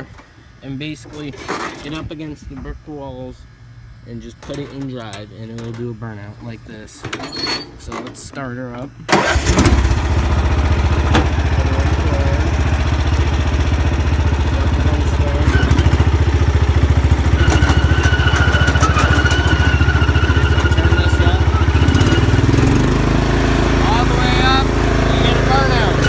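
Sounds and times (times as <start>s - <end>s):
thin high squeal: 7.2s - 7.8s, 15.4s - 22.8s
lawn tractor engine running: 9.1s - 26.0s.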